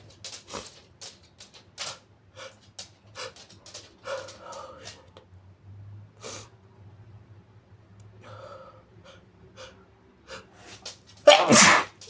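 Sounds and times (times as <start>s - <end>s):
person sneezing loudly: 11.3s - 12.0s.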